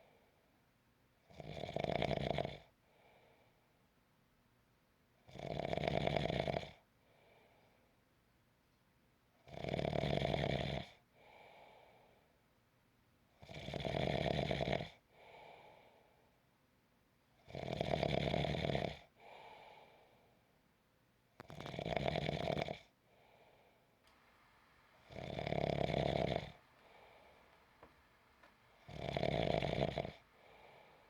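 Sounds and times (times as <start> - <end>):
loud snoring: 1.3 - 2.7, 5.3 - 6.8, 9.5 - 11.0, 13.4 - 15.0, 17.5 - 19.1, 21.5 - 22.9, 25.0 - 31.0
faint breath: 2.8 - 3.8, 7.0 - 8.0, 11.1 - 12.4, 15.1 - 16.4, 19.2 - 20.5, 23.0 - 31.0.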